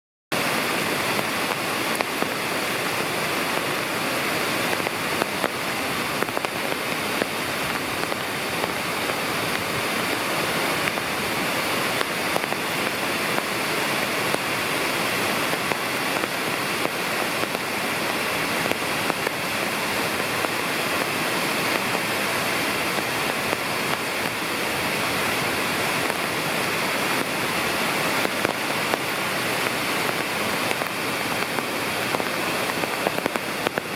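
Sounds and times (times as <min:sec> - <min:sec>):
waterfall rushing: 0:00.3 - 0:33.9.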